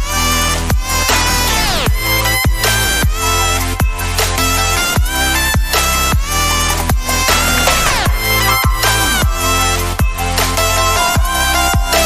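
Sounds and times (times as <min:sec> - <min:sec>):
electronic music with heavy bass: 0:00.0 - 0:12.0
falling synth sweep: 0:07.4 - 0:10.0.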